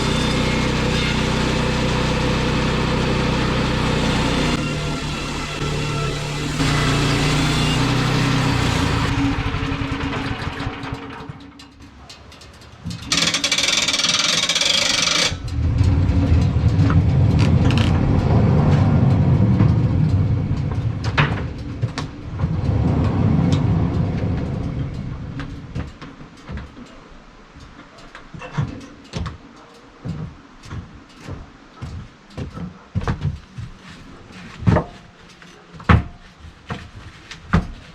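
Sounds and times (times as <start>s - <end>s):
sawmill gas engine running: 0.0s - 11.6s
knocks and clicks: 12.9s - 26.8s.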